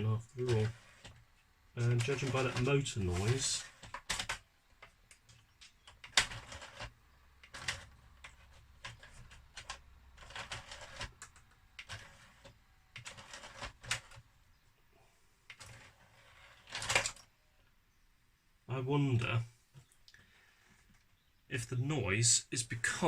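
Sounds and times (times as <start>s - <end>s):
clicking and rattling: 0.0s - 14.3s, 15.5s - 17.3s
low steady hum: 0.0s - 20.5s.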